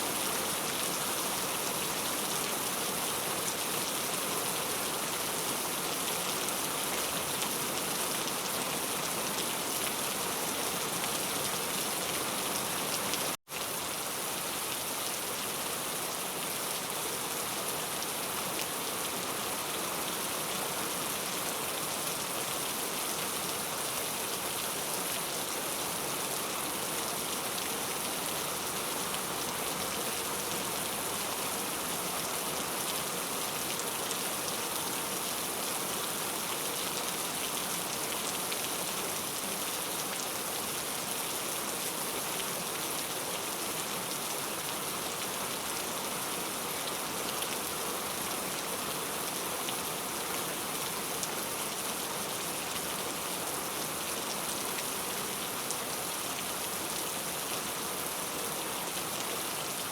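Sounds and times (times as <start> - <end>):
heavy rainfall: 0.0 - 59.9.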